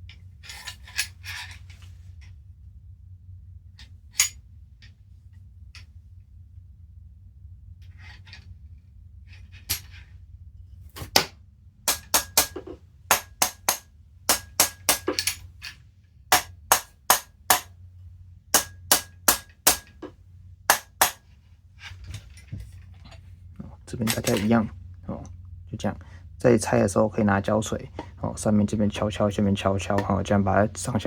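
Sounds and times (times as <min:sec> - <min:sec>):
mallet tapping on metal part: 0:11.9 - 0:15.4, 0:16.3 - 0:17.7, 0:18.6 - 0:20.0, 0:20.7 - 0:21.2.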